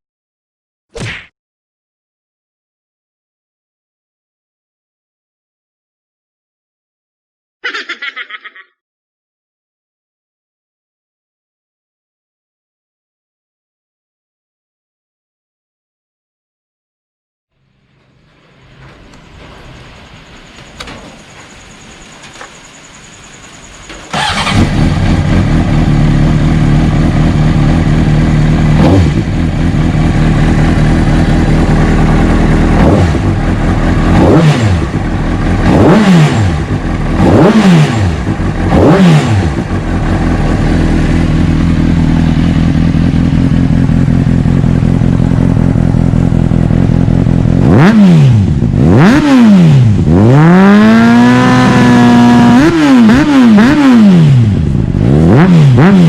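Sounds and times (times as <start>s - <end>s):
motorcycle engine idling and revving: 23.6s - 56.0s.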